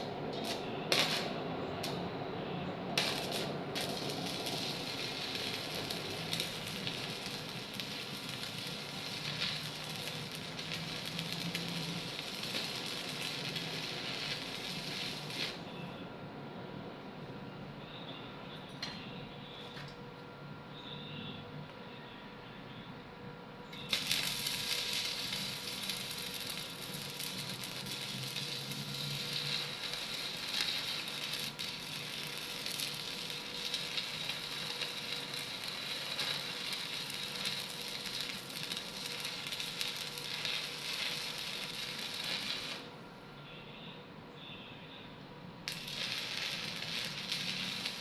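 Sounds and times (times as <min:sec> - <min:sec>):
welding arc crackling: 0:00.0 - 0:02.1, 0:02.9 - 0:15.7, 0:23.7 - 0:43.0, 0:45.6 - 0:48.0.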